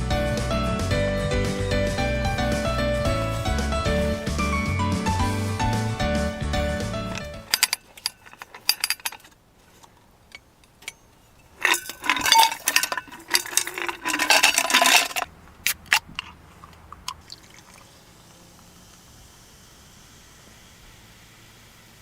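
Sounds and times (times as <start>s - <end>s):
dishes clinking and knocking: 11.6s - 15.3s.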